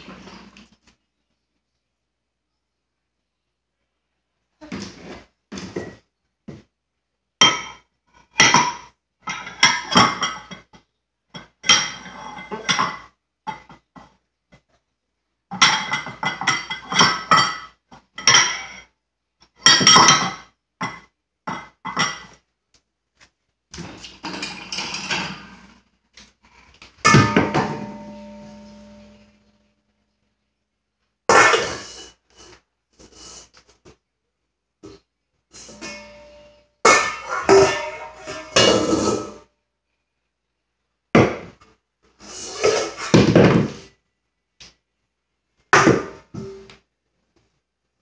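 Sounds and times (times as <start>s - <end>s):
dishes and cutlery clattering: 8.4s - 13.9s, 15.5s - 18.9s, 19.6s - 22.4s, 24.2s - 25.8s, 27.0s - 29.4s, 35.6s - 39.4s
metal pot clanging: 27.0s - 29.6s, 35.6s - 39.4s.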